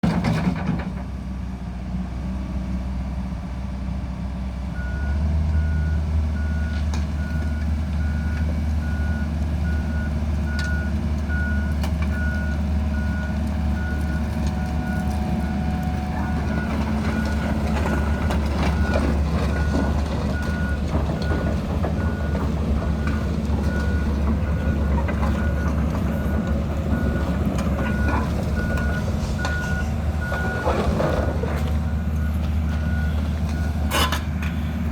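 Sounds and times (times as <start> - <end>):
excavator diesel engine running: 0.0 - 34.9
travel alarm beeps: 23.0 - 30.7.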